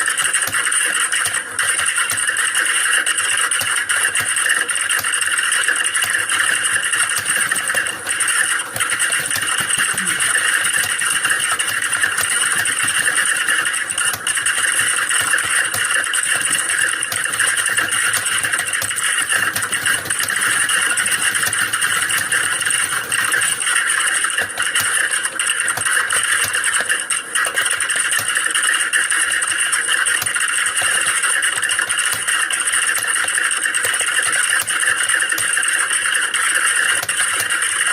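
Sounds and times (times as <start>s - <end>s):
keyboards typing clatter: 0.0s - 37.9s.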